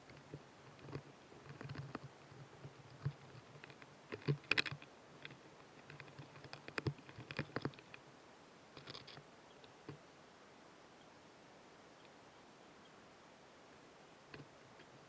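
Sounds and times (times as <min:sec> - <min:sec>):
insect clicks and crackles: 0:02.9 - 0:08.0.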